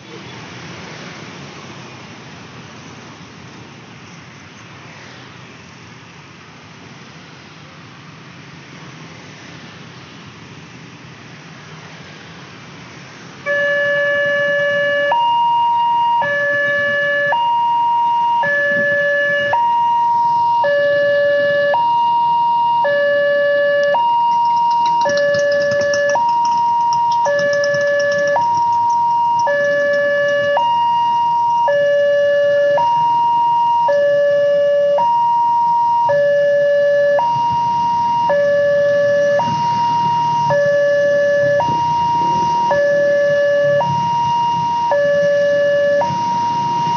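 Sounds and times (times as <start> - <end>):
level crossing two-tone siren: 13.4 - 46.9.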